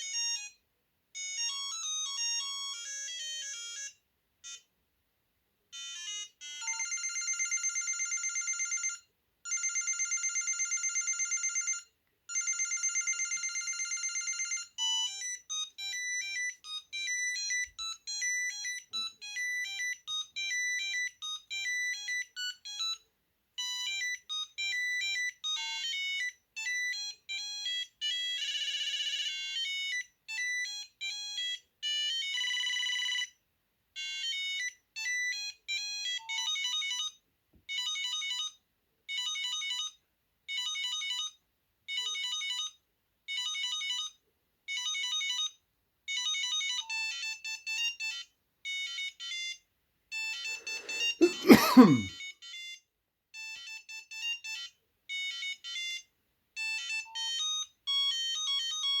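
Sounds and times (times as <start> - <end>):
mobile phone ringtones beeping: 1.2 - 4.6, 5.8 - 17.6.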